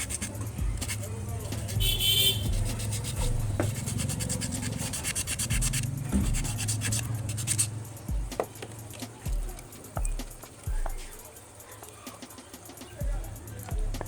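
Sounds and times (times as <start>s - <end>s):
brush scrubbing metal: 0.0s - 13.7s.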